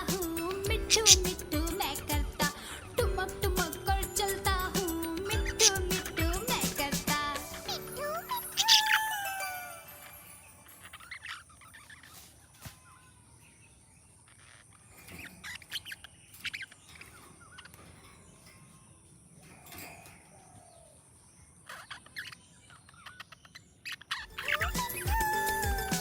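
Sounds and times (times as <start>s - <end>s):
budgerigar chirping faintly: 10.6s - 25.8s.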